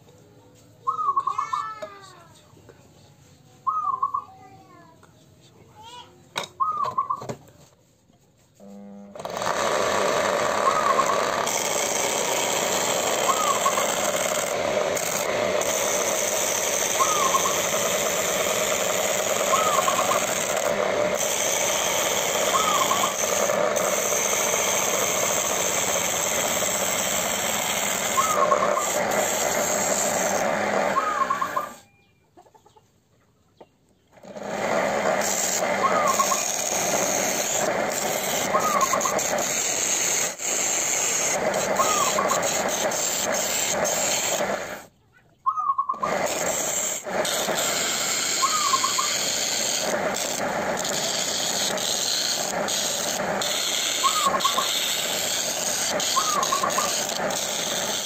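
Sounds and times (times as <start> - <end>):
bird chirps: 0.8 - 1.8, 3.6 - 4.4, 6.5 - 7.3, 31.0 - 34.2, 45.0 - 46.0
wood lathe motor running: 8.6 - 31.8, 34.2 - 44.9, 45.9 - 58.0
hiss of wood being cut: 9.3 - 31.8, 34.2 - 44.9, 46.0 - 58.0.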